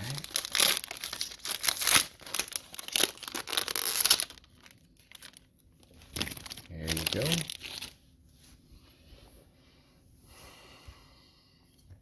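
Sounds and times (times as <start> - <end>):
plastic wrapper tearing and crinkling: 0.0 - 8.0.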